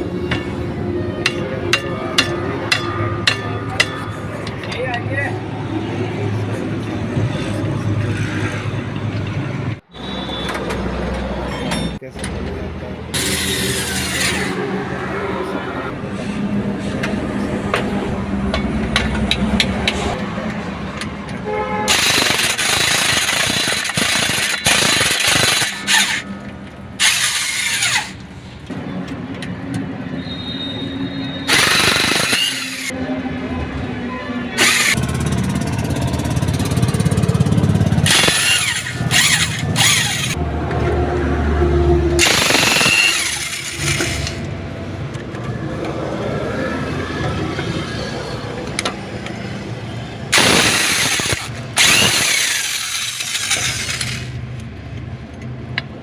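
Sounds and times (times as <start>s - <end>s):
pneumatic impact wrench bursts: 13.1s - 14.6s, 21.9s - 26.3s, 27.0s - 28.3s, 31.5s - 32.9s, 34.6s - 35.0s, 38.0s - 40.4s, 42.2s - 44.5s, 50.3s - 54.4s.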